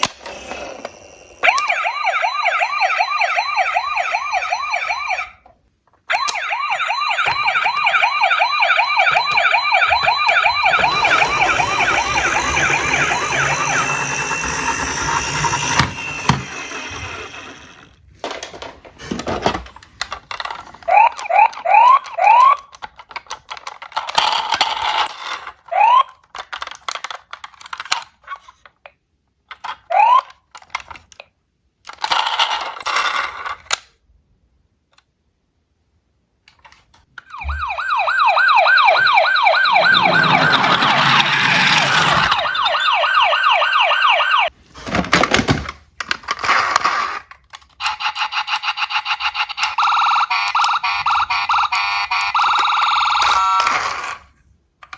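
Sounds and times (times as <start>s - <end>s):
steady electronic alarm tone: 1.4s - 5.3s, 6.1s - 17.7s, 37.3s - 44.5s
fast-warbling toy siren: 1.4s - 5.4s, 6.1s - 17.8s, 20.9s - 22.6s, 25.7s - 26.1s, 29.9s - 30.3s, 37.3s - 44.5s, 47.8s - 53.8s
short rising electronic chirps: 8.4s - 17.5s, 37.3s - 44.5s
toy cars clicking and clattering: 10.7s - 34.0s, 39.8s - 42.6s, 44.8s - 54.9s.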